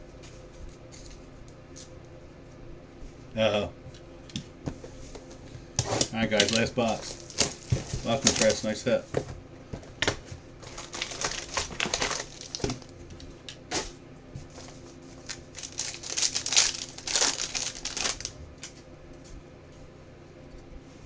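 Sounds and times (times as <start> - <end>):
wrappers and cardboard crinkling: 5.8 - 9.1, 9.9 - 18.9.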